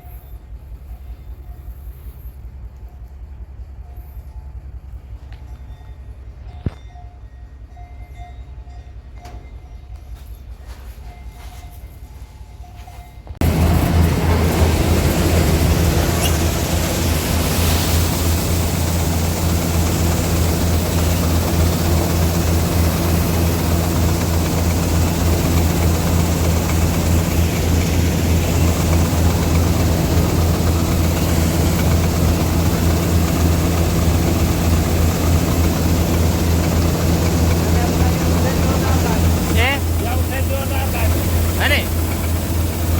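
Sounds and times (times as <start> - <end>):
harvester machinery working: 13.4 - 42.9
tractor engine humming: 13.4 - 42.9.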